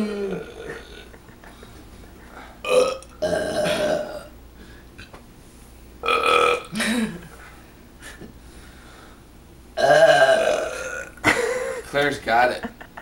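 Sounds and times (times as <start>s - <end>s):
person belching: 0.0s - 1.2s, 2.6s - 4.3s, 6.0s - 7.2s, 9.8s - 11.2s.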